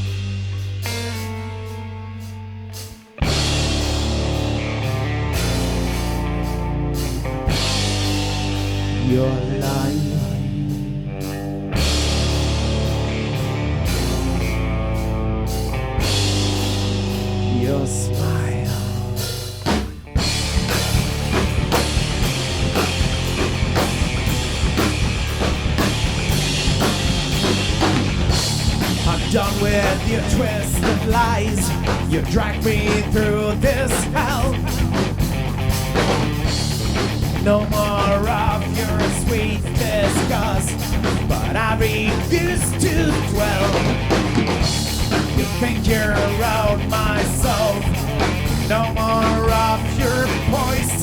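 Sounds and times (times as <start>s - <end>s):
heavy rock music: 0.0s - 51.0s
drum kit hits: 18.2s - 42.4s.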